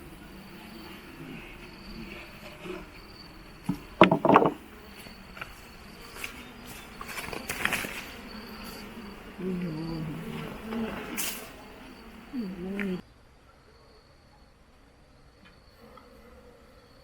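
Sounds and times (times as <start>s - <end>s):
insects chirping: 0.0s - 17.0s
clatter of sharp knocks: 3.7s - 4.6s.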